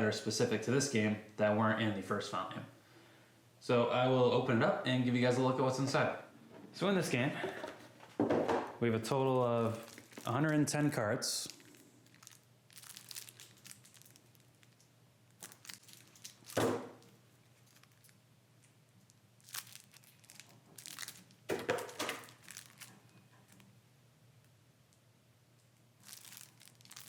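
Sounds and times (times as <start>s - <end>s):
plastic wrapping crinkling and tearing: 9.2s - 23.7s, 26.0s - 27.0s.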